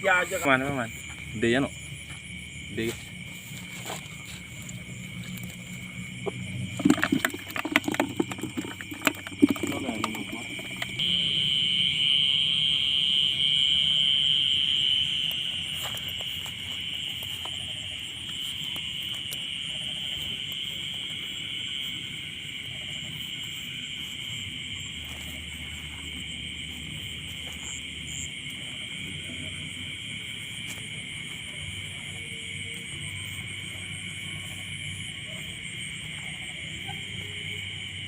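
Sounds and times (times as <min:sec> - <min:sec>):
insect chorus trilling: 0:00.0 - 0:38.0.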